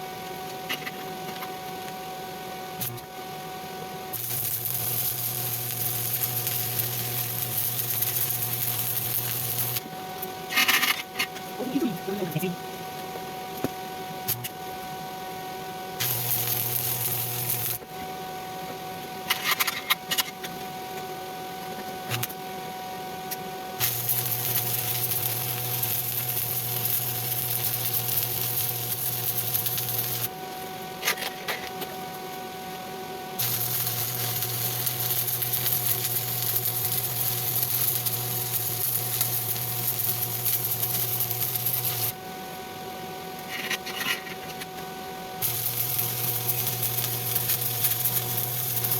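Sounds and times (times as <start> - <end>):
welding arc crackling and hissing: 2.8 - 3.1, 4.1 - 9.9, 11.6 - 12.6, 16.0 - 17.8, 23.8 - 30.3, 33.4 - 42.2, 45.4 - 48.9.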